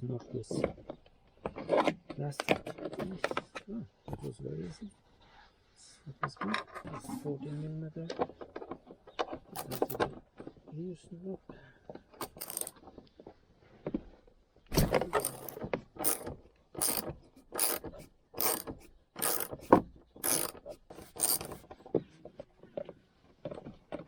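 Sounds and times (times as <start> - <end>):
ratchet wrench clicking: 12.2 - 12.7, 15.1 - 21.6.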